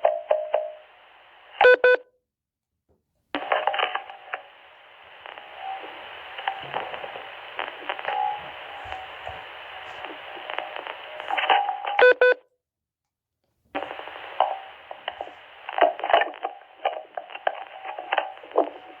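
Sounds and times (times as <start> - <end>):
radio static crackling: 3.4 - 12.1, 13.7 - 19.0
faint humming tones: 4.1 - 11.5.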